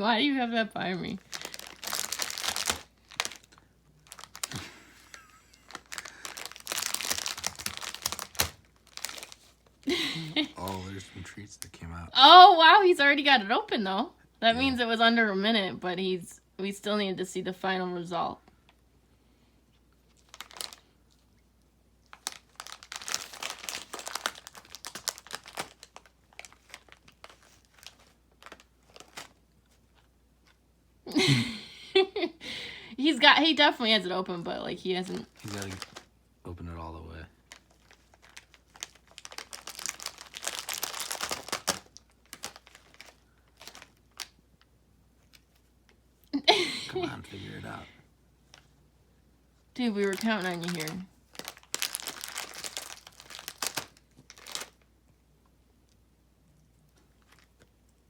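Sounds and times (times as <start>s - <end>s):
plastic bag crinkling: 1.1s - 11.3s, 20.1s - 21.0s, 22.0s - 30.6s, 35.0s - 36.1s, 37.4s - 44.4s, 49.8s - 54.9s, 57.1s - 57.7s.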